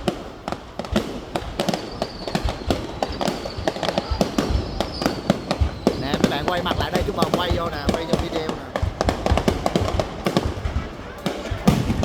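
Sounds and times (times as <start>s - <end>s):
fireworks banging and cracking: 0.0s - 12.0s
faint high whistle: 1.7s - 6.2s.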